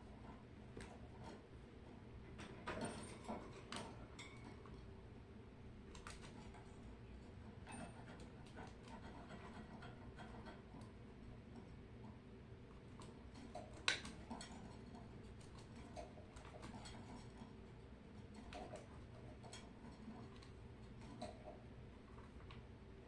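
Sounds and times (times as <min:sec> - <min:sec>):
birds tapping in a cage: 0:02.3 - 0:04.9, 0:12.8 - 0:22.4.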